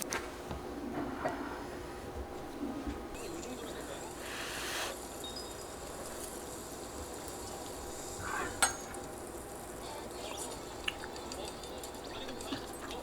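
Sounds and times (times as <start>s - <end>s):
food sizzling in a frying pan: 4.0s - 10.8s
utensils clinking against pan: 8.6s - 9.0s.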